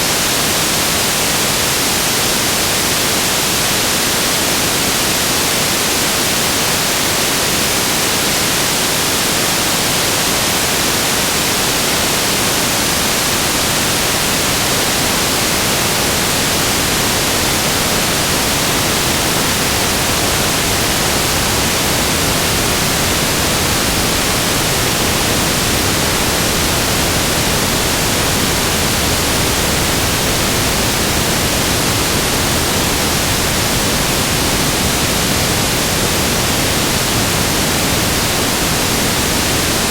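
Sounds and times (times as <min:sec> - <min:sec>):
static hiss: 0:00.0 - 0:39.9.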